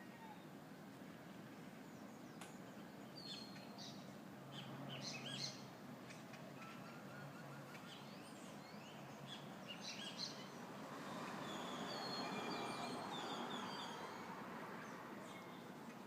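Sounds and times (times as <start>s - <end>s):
birds chirping: 1.8s - 10.6s.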